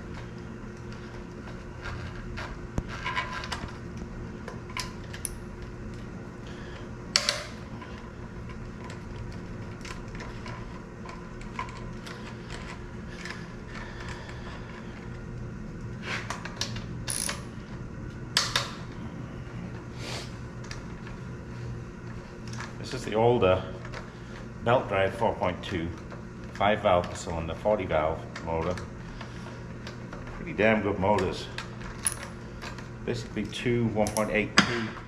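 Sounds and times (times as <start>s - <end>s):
steady low hum: 0.0s - 35.0s
tools and bolts clinking on metal: 34.0s - 34.9s.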